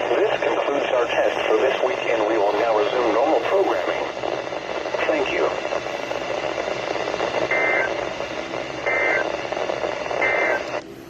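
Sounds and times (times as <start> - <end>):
radio static hiss: 0.0 - 10.8
two-tone digital data bursts: 7.3 - 8.0, 8.8 - 9.4, 10.1 - 10.7.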